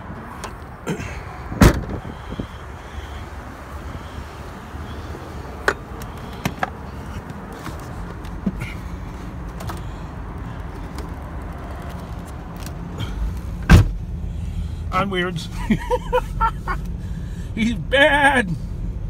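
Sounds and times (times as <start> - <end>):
road and engine rumble: 0.0 - 19.0
sharp clicks in car: 5.6 - 8.5.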